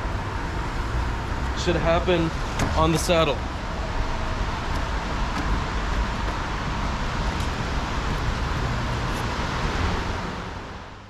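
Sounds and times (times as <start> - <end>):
street traffic: 0.0 - 11.0
wind: 0.0 - 11.0.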